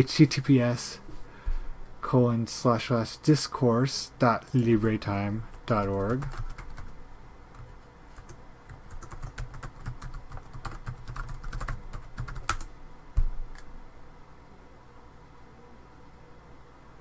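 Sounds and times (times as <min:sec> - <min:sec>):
computer keyboard typing: 0:05.6 - 0:12.7.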